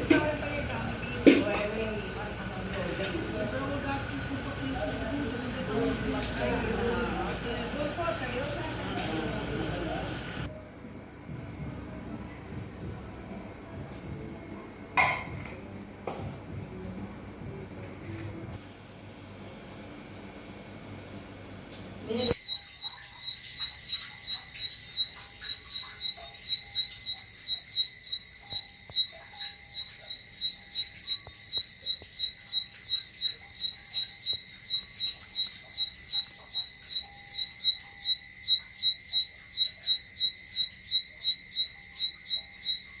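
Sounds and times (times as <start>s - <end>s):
cricket chirping: 22.1s - 43.0s.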